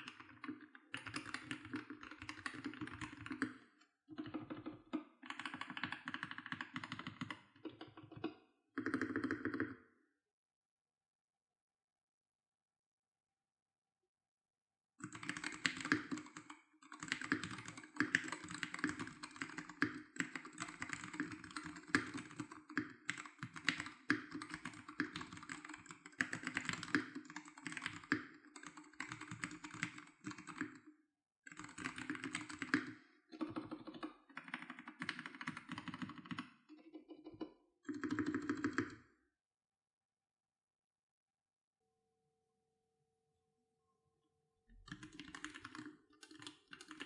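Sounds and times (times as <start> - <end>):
mechanical keyboard typing: 0.0 - 9.8, 15.0 - 30.8, 31.5 - 36.6, 37.9 - 39.0, 44.9 - 47.0.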